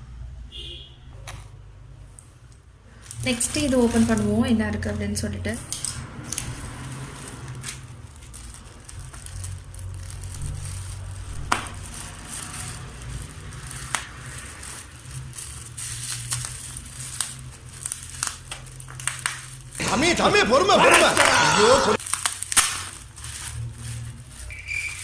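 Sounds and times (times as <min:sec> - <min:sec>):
packaging crinkling and tearing: 0:03.0 - 0:04.9, 0:05.6 - 0:25.0
packaging snaps and clicks: 0:16.1 - 0:19.8, 0:22.0 - 0:23.1.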